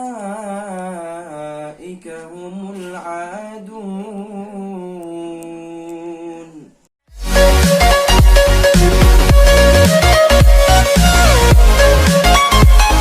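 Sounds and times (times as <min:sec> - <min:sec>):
man reciting melodically: 0:00.0 - 0:06.9.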